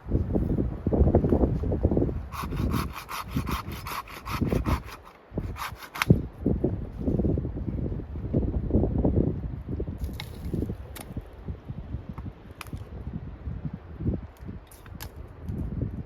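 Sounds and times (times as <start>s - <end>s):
hand saw cutting wood: 2.3s - 6.2s.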